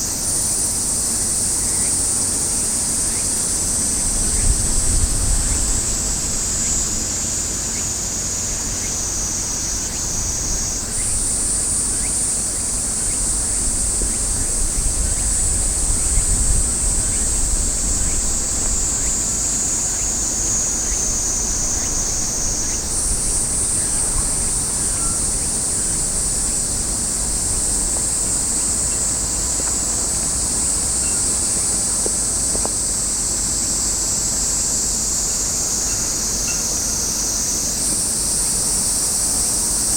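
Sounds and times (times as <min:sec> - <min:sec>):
wind buffeting microphone: 0:02.9 - 0:07.8, 0:08.4 - 0:29.5.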